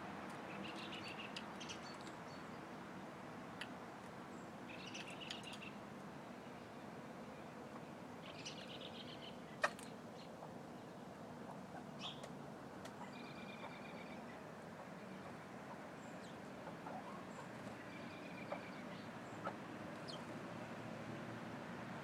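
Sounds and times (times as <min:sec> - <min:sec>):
chicken chirping trills: 0:15.1 - 0:20.3.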